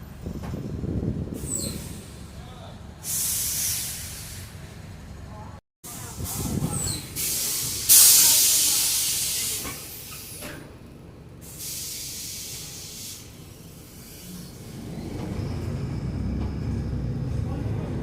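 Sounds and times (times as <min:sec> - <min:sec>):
bus engine low rumble: 0:00.0 - 0:18.0
compressed air hissing: 0:03.0 - 0:04.6, 0:06.2 - 0:10.5, 0:11.4 - 0:14.6.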